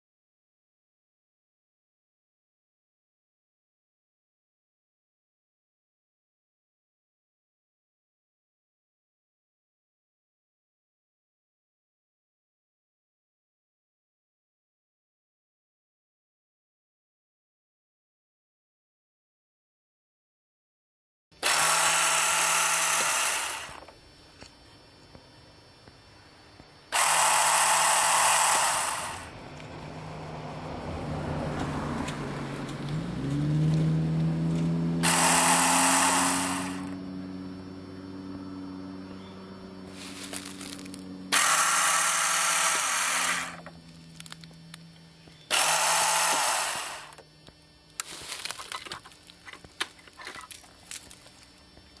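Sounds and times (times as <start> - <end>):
motorcycle starter whirring: 21.4 - 23.9, 26.9 - 29.4, 34.5 - 37.1, 40.2 - 44.5
low hum rising in pitch: 29.3 - 42.0.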